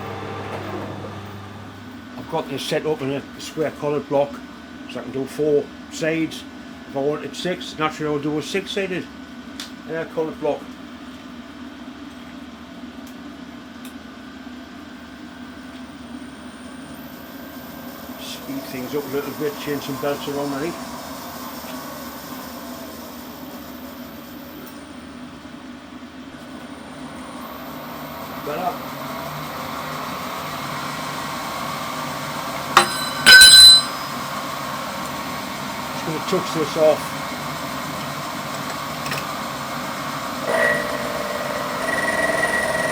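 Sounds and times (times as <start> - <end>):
machine tool humming: 0.0 - 2.0, 39.4 - 42.9
ringing metal clang: 32.8 - 34.0
sharp metallic knock: 32.8 - 34.0.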